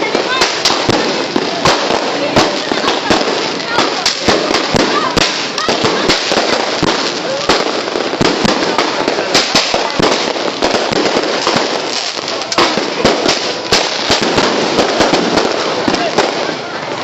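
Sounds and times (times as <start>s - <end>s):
fireworks bangs and pops: 0.0s - 17.0s
fireworks crackling: 0.0s - 17.0s.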